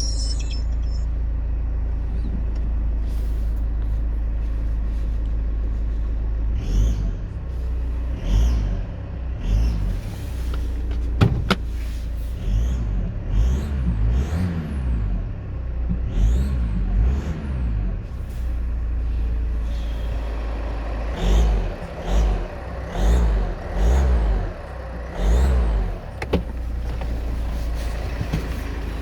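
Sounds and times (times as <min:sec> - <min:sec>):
high whistle: 0:00.0 - 0:01.1
car engine revving: 0:06.5 - 0:10.5, 0:12.4 - 0:29.0.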